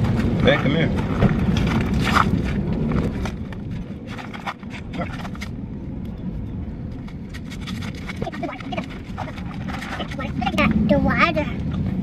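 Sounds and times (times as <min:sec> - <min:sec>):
low outdoor rumble: 0:00.0 - 0:12.0
voices: 0:08.1 - 0:11.6.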